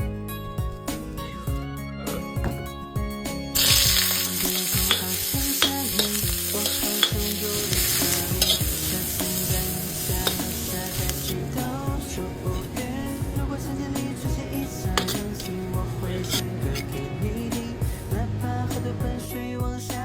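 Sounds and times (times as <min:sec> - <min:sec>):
spatula scraping a pan: 0:03.6 - 0:11.4, 0:14.7 - 0:17.1
food sizzling in a pan: 0:03.6 - 0:11.7, 0:14.6 - 0:17.0.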